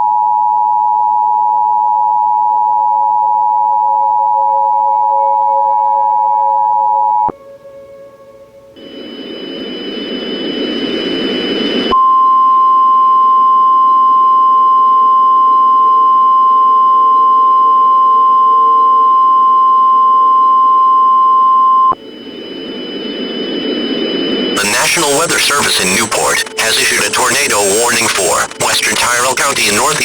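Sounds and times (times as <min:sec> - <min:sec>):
faint high whine: 0:03.7 - 0:30.0
radio static hiss: 0:08.8 - 0:11.9, 0:22.1 - 0:30.0
loud steady alarm tone: 0:21.9 - 0:30.0.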